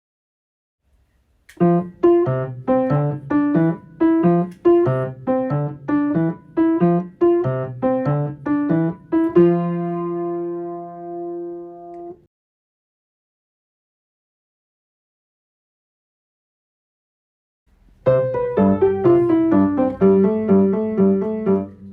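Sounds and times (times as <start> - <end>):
bouncy piano phrase: 1.6 - 12.3, 18.0 - 21.9.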